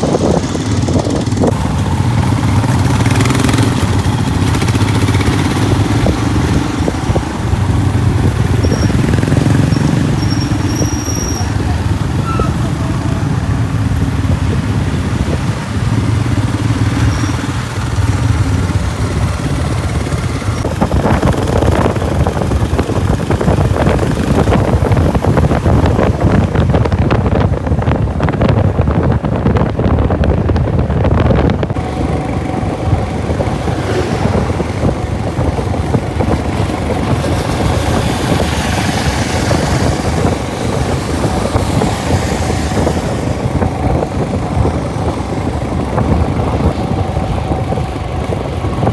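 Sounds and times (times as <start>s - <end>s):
motorcycle engine running: 0.0s - 48.9s.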